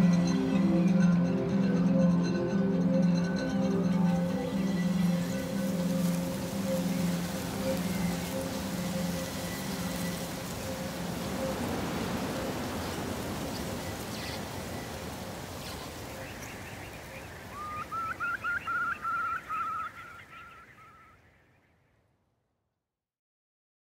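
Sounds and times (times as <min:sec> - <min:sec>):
steady hiss: 0:04.5 - 0:16.7
wading bird whistling: 0:05.3 - 0:15.0, 0:15.6 - 0:21.2.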